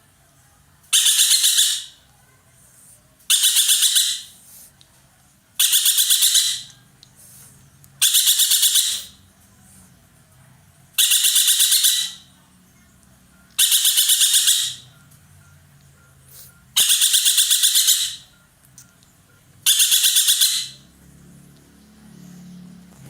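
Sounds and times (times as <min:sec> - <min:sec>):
bird rattling calls: 0:00.9 - 0:02.0, 0:03.3 - 0:04.3, 0:05.6 - 0:06.7, 0:08.0 - 0:09.2, 0:11.0 - 0:12.3, 0:13.6 - 0:14.8, 0:16.8 - 0:18.3, 0:19.6 - 0:20.8.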